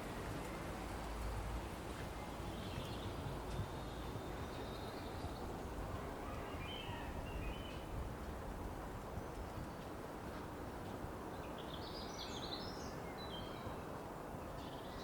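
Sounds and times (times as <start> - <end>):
birds chirping: 2.2 - 7.9.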